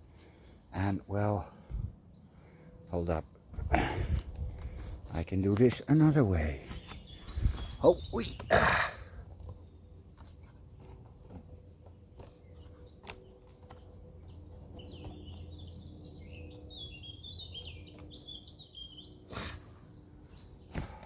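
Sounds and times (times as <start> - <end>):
distant traffic hum: 0.0 - 21.0
small songbird singing: 6.1 - 11.0, 12.1 - 19.3.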